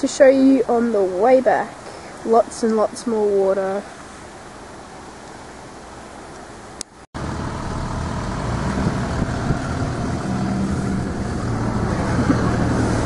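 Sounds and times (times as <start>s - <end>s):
road noise: 0.0s - 13.0s
car engine driving: 4.0s - 13.0s.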